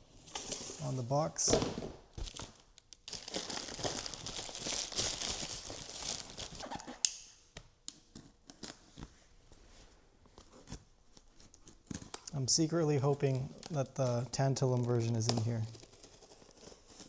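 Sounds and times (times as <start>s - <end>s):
plastic packaging crinkling: 0.8s - 7.0s, 10.4s - 17.0s.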